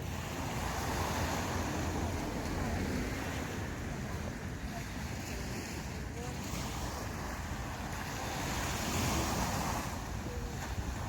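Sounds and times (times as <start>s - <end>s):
sea waves washing on beach: 0.0s - 11.0s
wind rumble on microphone: 0.0s - 11.0s.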